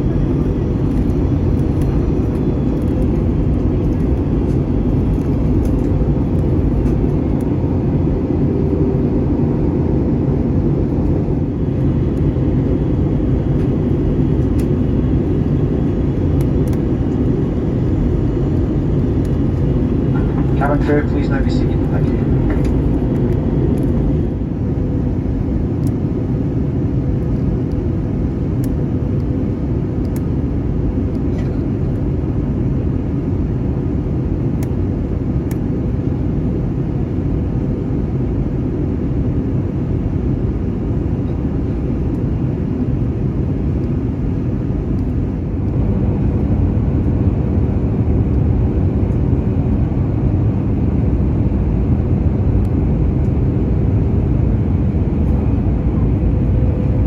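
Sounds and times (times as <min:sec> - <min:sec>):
airliner cabin rumble: 0:00.0 - 0:57.0.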